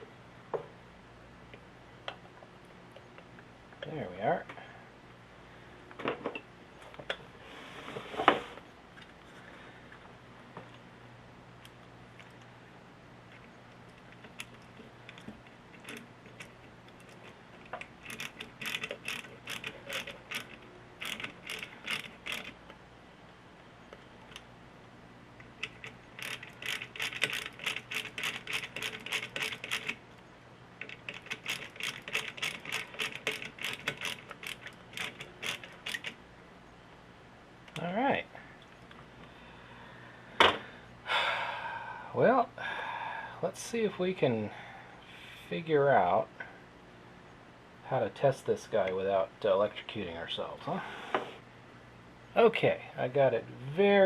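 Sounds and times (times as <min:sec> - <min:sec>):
ratchet tool clicking: 0:15.8 - 0:22.6, 0:25.6 - 0:30.0, 0:30.8 - 0:36.2.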